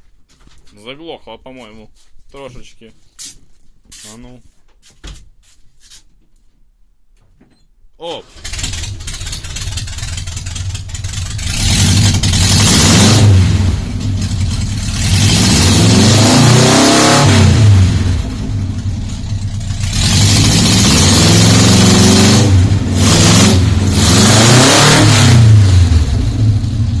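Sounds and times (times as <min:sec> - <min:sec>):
car engine idling: 0:08.3 - 0:16.0, 0:17.6 - 0:24.0
car engine revving: 0:08.3 - 0:27.0.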